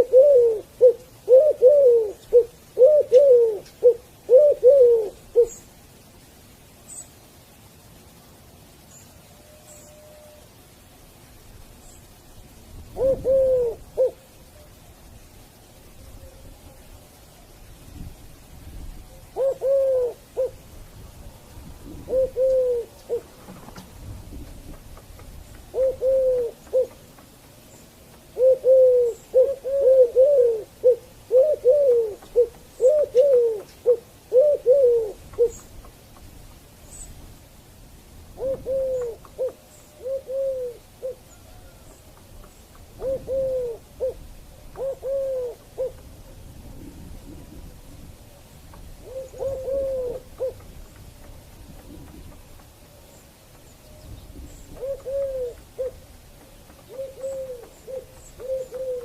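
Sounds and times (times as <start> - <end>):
dove cooing: 0.0 - 5.6, 12.9 - 14.8, 19.0 - 20.6, 21.8 - 27.1, 28.3 - 35.8, 38.4 - 50.9, 53.9 - 59.0.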